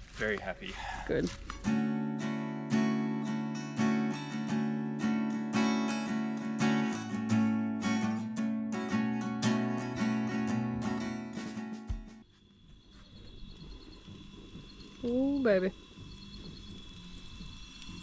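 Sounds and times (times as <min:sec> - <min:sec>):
strummed acoustic guitar: 0:01.3 - 0:12.2.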